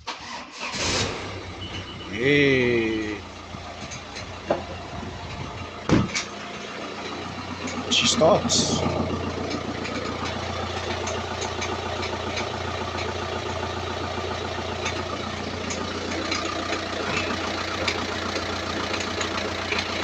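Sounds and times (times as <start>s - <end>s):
car engine idling: 0.1s - 20.0s.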